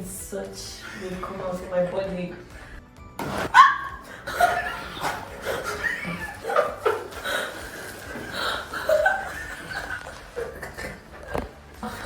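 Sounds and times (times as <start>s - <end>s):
person laughing: 4.1s - 12.0s.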